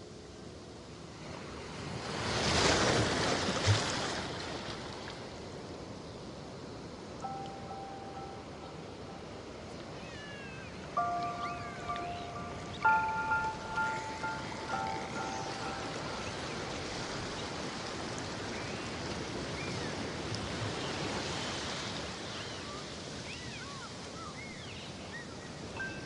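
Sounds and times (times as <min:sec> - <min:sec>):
rushing water: 0:01.2 - 0:05.9, 0:06.5 - 0:26.0
short high chirps: 0:11.0 - 0:16.7.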